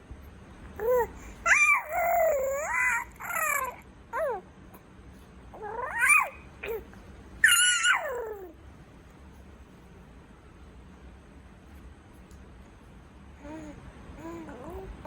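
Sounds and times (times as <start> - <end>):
baby boy making high calls: 0.8 - 4.3, 5.8 - 6.8, 7.4 - 8.5.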